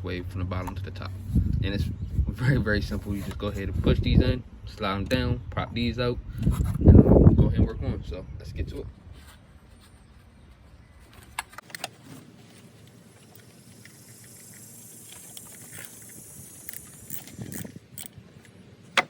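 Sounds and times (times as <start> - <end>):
tools clicking and rattling: 13.2 - 19.0.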